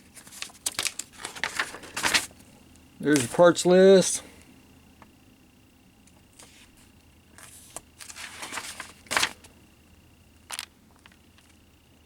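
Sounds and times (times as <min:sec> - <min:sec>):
paper pages rustling: 0:00.0 - 0:02.5, 0:03.1 - 0:03.4, 0:06.4 - 0:09.5, 0:10.5 - 0:11.6.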